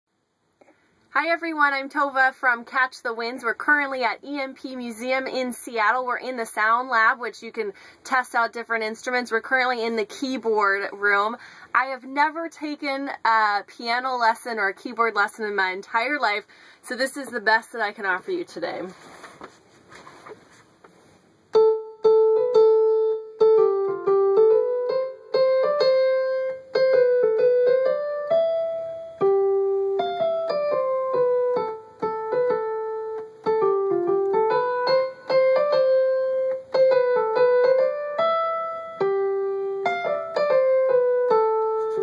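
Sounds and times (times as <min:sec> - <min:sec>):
simple keyboard piano melody: 0:21.5 - 0:42.0.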